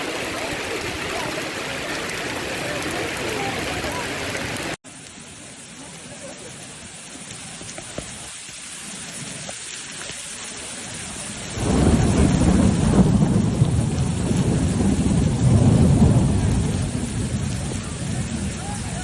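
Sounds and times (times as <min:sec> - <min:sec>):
thunder rumbling: 0:00.0 - 0:04.8, 0:11.4 - 0:19.0
rain falling: 0:00.0 - 0:19.0.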